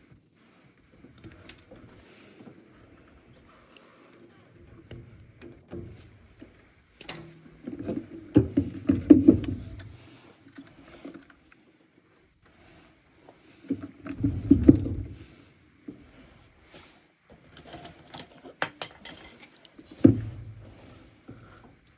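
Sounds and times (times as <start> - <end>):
knocks and rattles on metal: 7.0 - 10.0.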